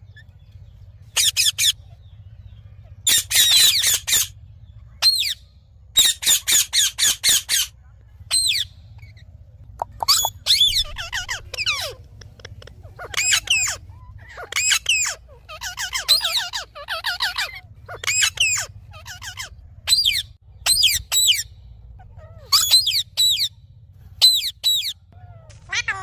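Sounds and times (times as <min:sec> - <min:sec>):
parakeet shrill calls: 0:01.1 - 0:02.0, 0:03.0 - 0:04.4, 0:05.0 - 0:05.4, 0:06.0 - 0:07.7, 0:08.3 - 0:09.2, 0:10.0 - 0:12.0, 0:12.8 - 0:23.6, 0:24.2 - 0:25.0.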